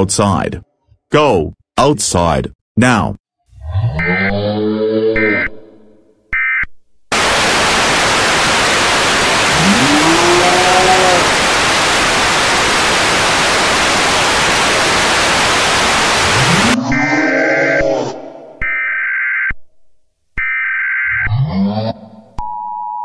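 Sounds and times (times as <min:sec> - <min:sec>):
loud static hiss: 0:07.1 - 0:16.8.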